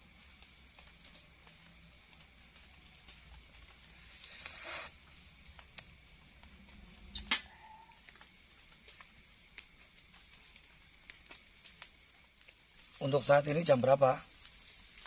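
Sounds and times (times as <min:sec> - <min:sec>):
person slurping coffee: 0:04.2 - 0:05.0.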